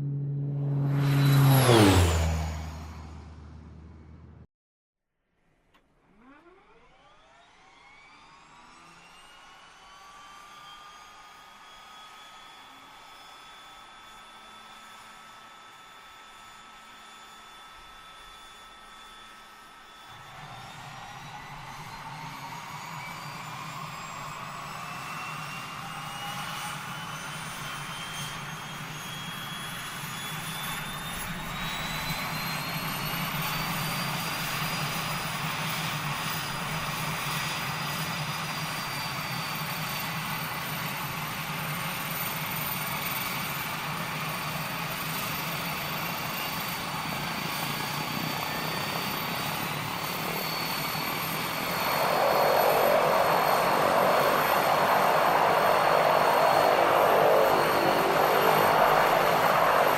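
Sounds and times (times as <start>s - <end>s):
biplane engine running: 0.0s - 4.5s, 19.7s - 59.9s.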